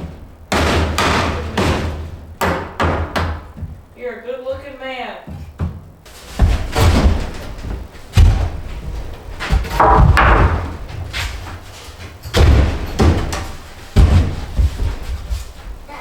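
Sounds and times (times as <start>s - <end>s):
heavy dull thuds: 0.0s - 16.0s
scraping and rustling: 3.6s - 16.0s.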